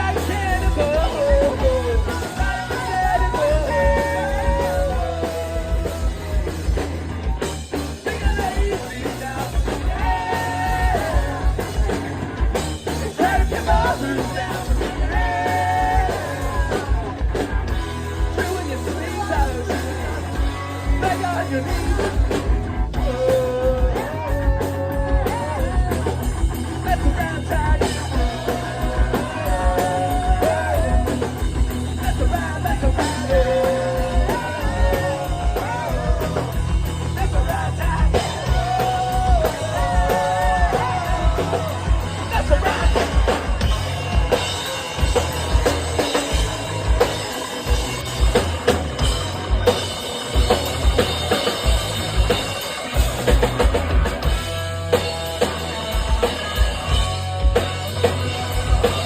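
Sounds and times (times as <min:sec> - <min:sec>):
person singing: 0:00.0 - 0:06.9, 0:08.0 - 0:12.0, 0:13.0 - 0:17.2, 0:18.3 - 0:48.4
bass guitar: 0:00.0 - 0:59.0
electric guitars: 0:00.0 - 0:59.0.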